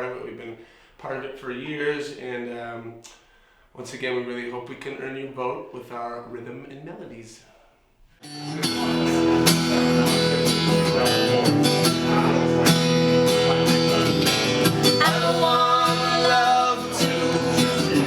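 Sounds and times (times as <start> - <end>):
acoustic guitar strumming chords: 8.2 - 18.0.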